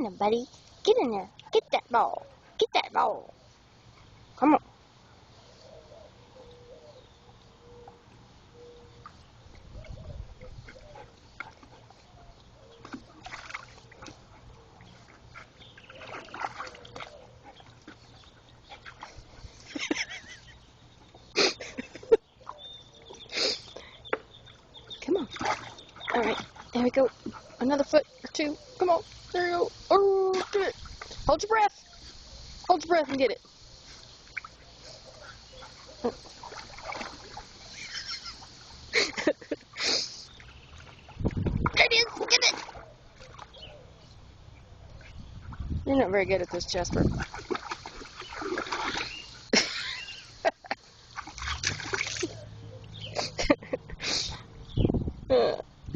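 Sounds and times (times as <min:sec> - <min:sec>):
dog splashing in water: 0:12.8 - 0:19.7, 0:25.0 - 0:27.8, 0:34.2 - 0:39.2, 0:40.3 - 0:43.6, 0:46.3 - 0:50.3, 0:51.1 - 0:53.6.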